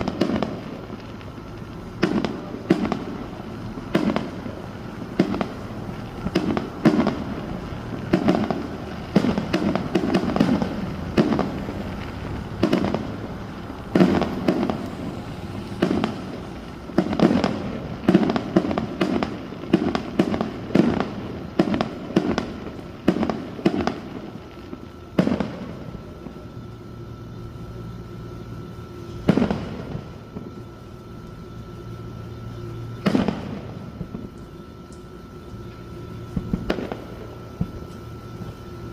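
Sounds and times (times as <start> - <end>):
fireworks bangs and pops: 0.0 - 26.7, 29.1 - 30.8, 32.6 - 38.7.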